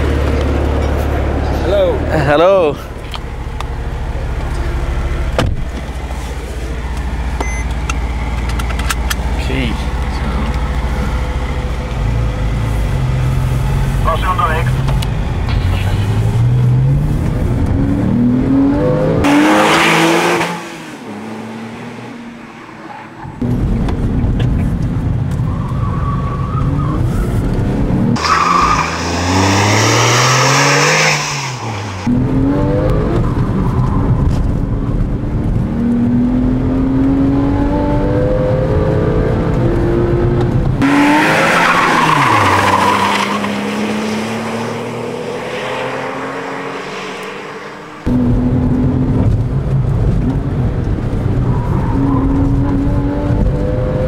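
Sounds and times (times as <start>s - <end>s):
car engine revving: 0.0s - 54.0s.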